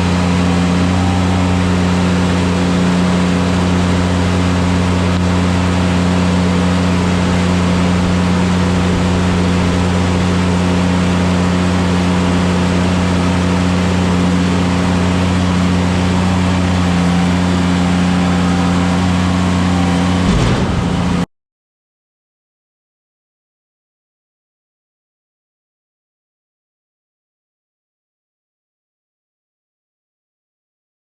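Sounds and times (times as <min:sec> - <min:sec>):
engine running steadily: 0:00.0 - 0:21.3.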